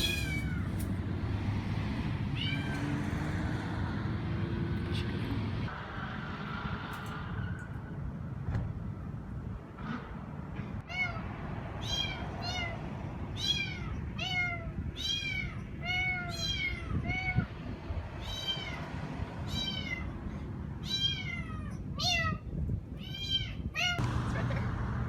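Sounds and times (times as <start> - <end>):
kitten meowing: 0.0 - 0.8, 2.4 - 2.8, 13.4 - 17.5, 18.2 - 18.8, 23.0 - 24.0.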